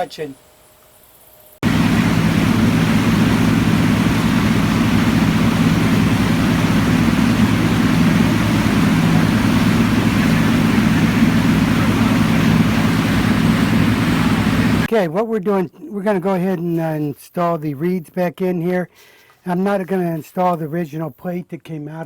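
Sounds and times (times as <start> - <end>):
outboard motor running: 1.6 - 14.9.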